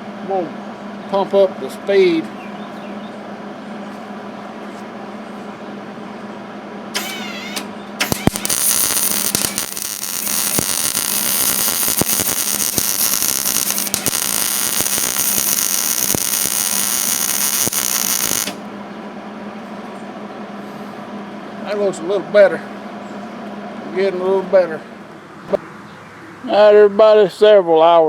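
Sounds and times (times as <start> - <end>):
steady electrical hum: 0.0 - 28.0
welder arc crackling sizzle: 6.9 - 18.7.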